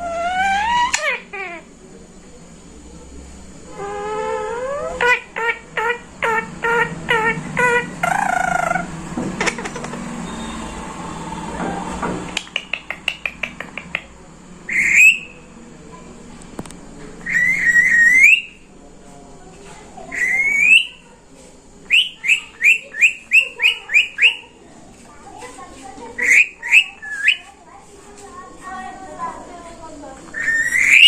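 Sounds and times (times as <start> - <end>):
parakeet chirping and calling: 0.0 - 1.6, 4.0 - 11.5, 14.7 - 15.4, 17.2 - 18.6, 20.1 - 21.0, 21.9 - 24.5, 26.2 - 27.5, 30.3 - 31.0.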